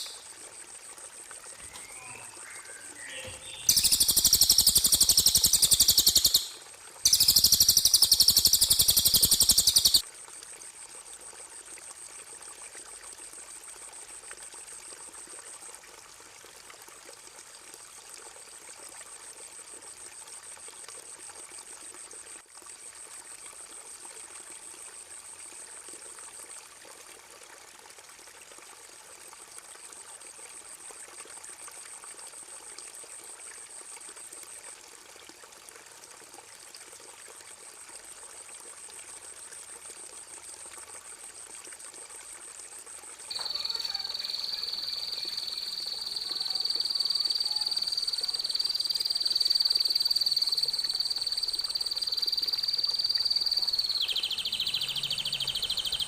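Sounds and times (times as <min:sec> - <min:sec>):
trickling water: 0:00.0 - 0:56.0
faint steady high tone: 0:01.6 - 0:10.0, 0:43.3 - 0:56.0.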